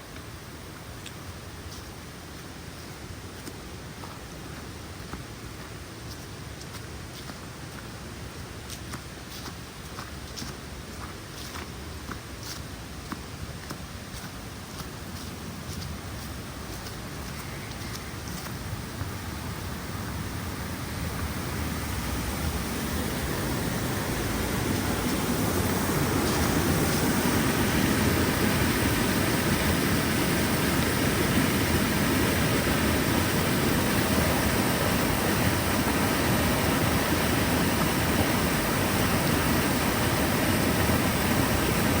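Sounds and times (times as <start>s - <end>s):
waterfall roaring: 16.7s - 42.0s.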